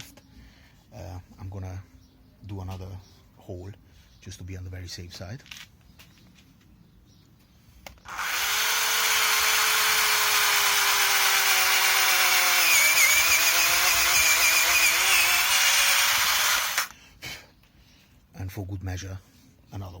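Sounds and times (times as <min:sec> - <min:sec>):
cordless drill boring into wood: 0:08.0 - 0:16.9.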